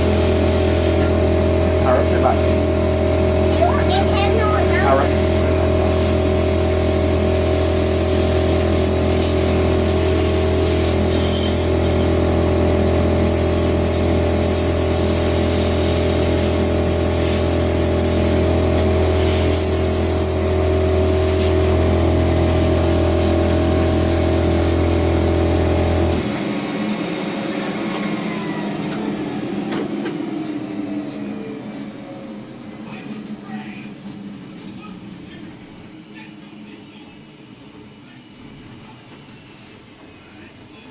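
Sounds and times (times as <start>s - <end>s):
motor hum and hiss: 0.0s - 31.5s
motor winding down whine: 0.0s - 32.3s
compressed air blasts: 5.2s - 26.3s.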